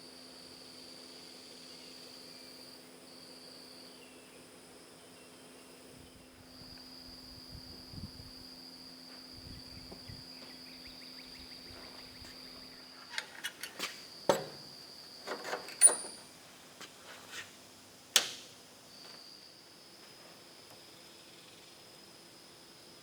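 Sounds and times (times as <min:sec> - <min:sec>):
metal tools clanking: 0:13.0 - 0:14.6, 0:15.3 - 0:16.2.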